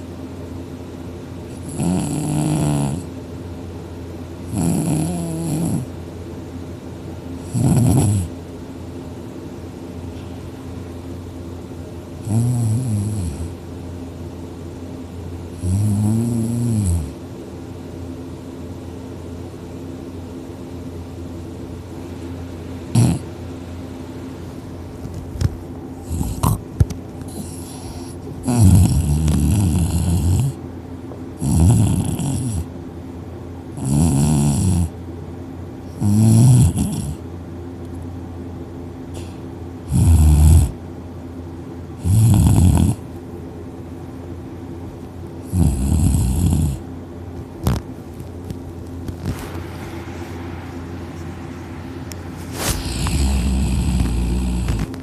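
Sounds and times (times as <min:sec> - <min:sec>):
man snoring heavily: 0:01.5 - 0:03.1, 0:04.5 - 0:05.9, 0:07.5 - 0:08.3, 0:12.2 - 0:13.5, 0:15.6 - 0:17.1, 0:22.9 - 0:23.3, 0:26.0 - 0:26.6, 0:27.3 - 0:30.6, 0:31.4 - 0:32.7, 0:33.8 - 0:34.9, 0:36.0 - 0:37.2, 0:39.9 - 0:40.8, 0:42.0 - 0:43.0, 0:45.5 - 0:46.9, 0:52.6 - 0:54.9.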